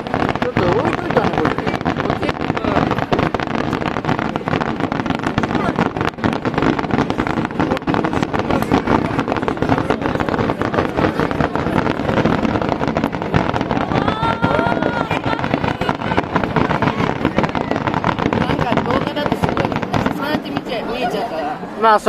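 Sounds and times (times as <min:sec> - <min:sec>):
firework whistles: 0:00.0 - 0:20.2
fireworks crackling and rumbling: 0:00.0 - 0:22.0.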